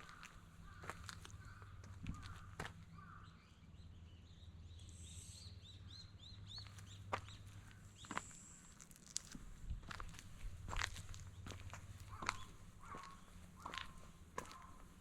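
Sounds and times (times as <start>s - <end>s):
steady low hum: 9.4s - 15.0s.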